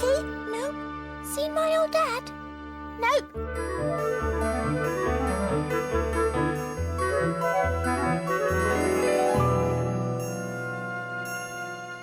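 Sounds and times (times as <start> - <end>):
tinkling melody over bass: 3.6 - 12.0.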